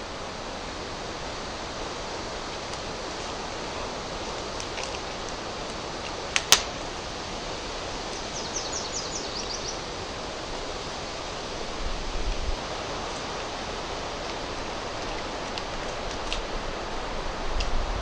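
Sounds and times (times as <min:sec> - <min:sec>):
steady hiss: 0:00.0 - 0:18.0
sharp clicks: 0:06.4 - 0:06.7.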